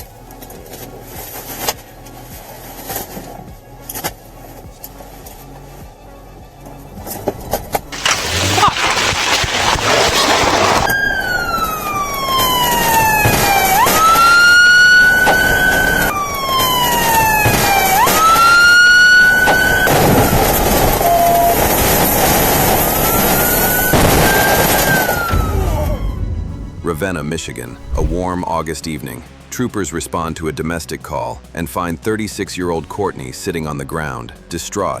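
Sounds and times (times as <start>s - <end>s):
rushing vehicle noise: 7.1s - 25.3s
police siren wailing: 8.0s - 26.2s.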